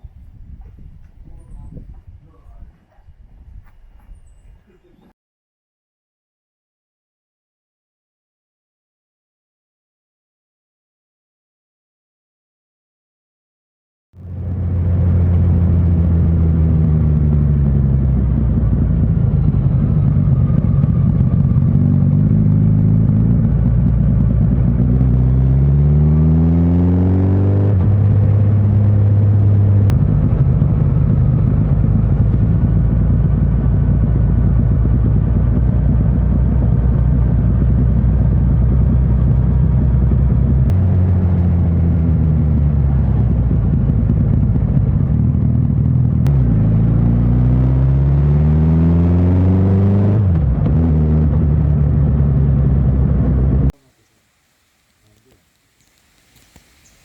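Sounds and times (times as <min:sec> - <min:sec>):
road and wind noise: 0:00.0 - 0:05.1, 0:14.2 - 0:57.0
motorcycle engine: 0:14.2 - 0:54.1.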